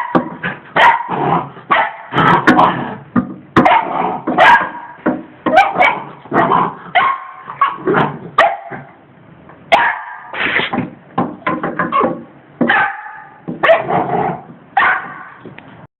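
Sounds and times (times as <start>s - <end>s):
dog barking in yaps: 0.0s - 2.2s, 3.6s - 8.9s, 9.7s - 10.4s, 11.8s - 15.4s.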